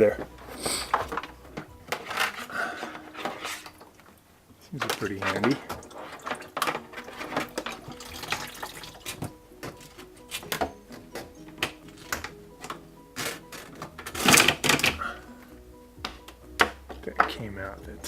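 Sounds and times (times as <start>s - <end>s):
hand tools clicking and scraping: 0.0s - 18.0s
water dripping and splashing: 4.8s - 9.8s.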